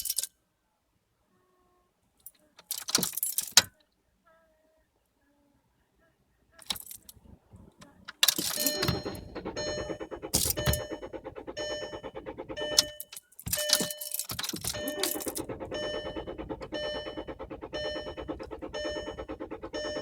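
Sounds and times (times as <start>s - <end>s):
fast even clicking of starter relay: 6.6s - 20.0s
dashboard warning chime: 8.4s - 20.0s.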